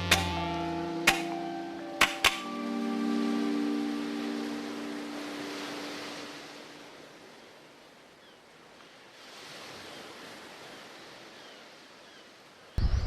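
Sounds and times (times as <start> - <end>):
sea surf washing: 0.0 - 8.0.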